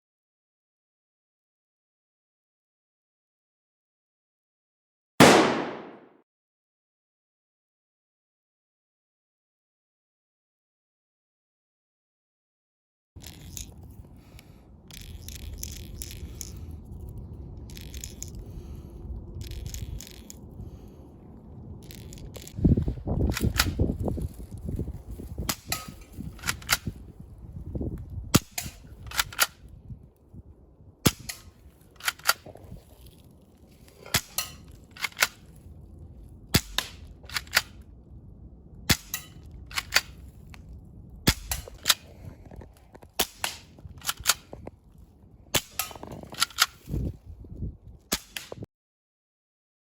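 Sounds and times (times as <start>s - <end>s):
air pistol shots: 5.2s - 6.2s
handling clicks and rattles: 13.2s - 18.5s.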